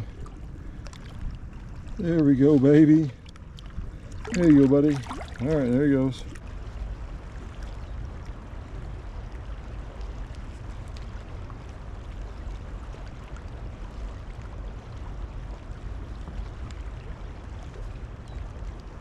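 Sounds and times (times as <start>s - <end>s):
deep low rumble: 0.0s - 19.0s
river current rushing: 3.8s - 6.4s.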